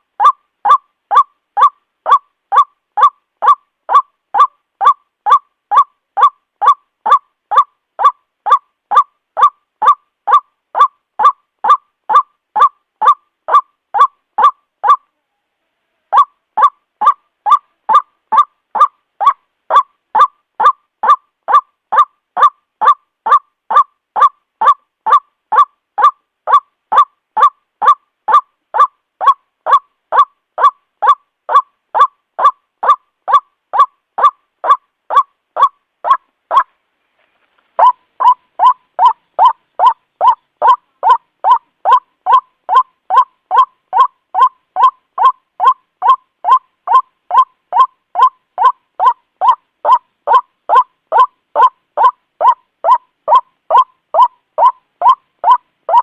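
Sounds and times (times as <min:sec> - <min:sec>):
waterhen harsh kwak call: 0:37.8 - 0:56.0.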